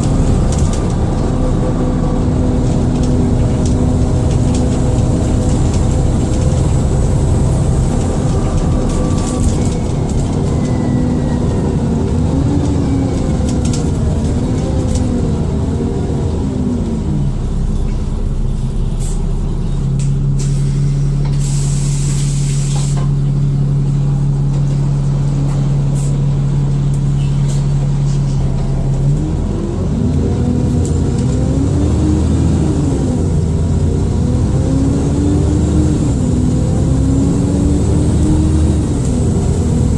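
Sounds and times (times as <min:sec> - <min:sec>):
bus diesel engine: 0:00.0 - 0:39.9
short air hiss: 0:20.4 - 0:23.0.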